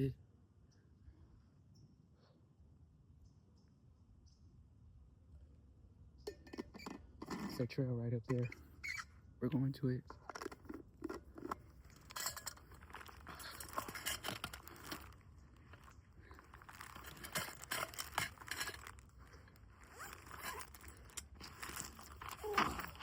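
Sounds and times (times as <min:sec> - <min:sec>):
footsteps crunching on dirt: 0:11.5 - 0:23.0
rustling of dry brush and clothing: 0:11.6 - 0:23.0.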